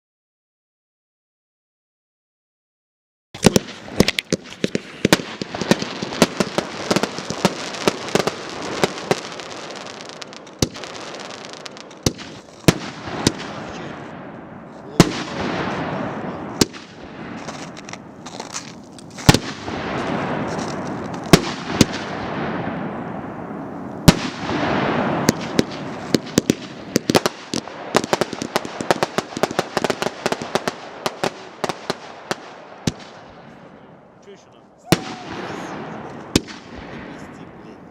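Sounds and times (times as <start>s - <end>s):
aerial firework bursts: 3.4s - 18.5s
big firework booms: 3.4s - 34.0s, 34.9s - 37.9s
continuous crackling hiss: 3.4s - 37.9s.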